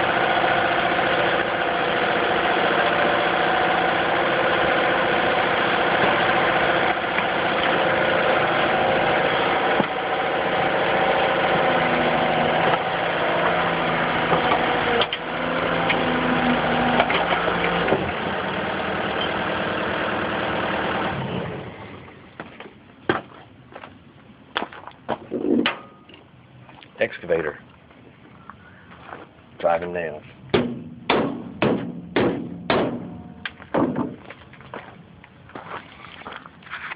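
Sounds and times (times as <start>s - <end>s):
diesel engine running: 0.0s - 24.5s, 28.2s - 36.7s
sharp knocks: 30.5s - 34.2s.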